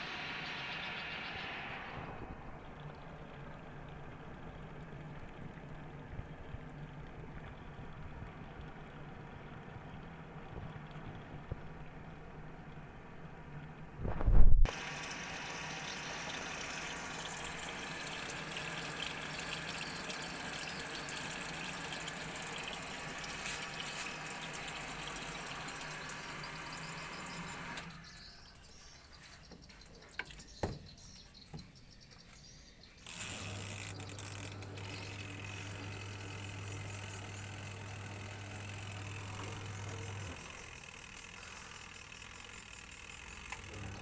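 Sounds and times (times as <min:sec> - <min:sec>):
electric motor humming: 0:14.7 - 0:28.5, 0:33.0 - 0:44.0
water running into washing machine: 0:14.7 - 0:31.6, 0:33.0 - 0:44.0.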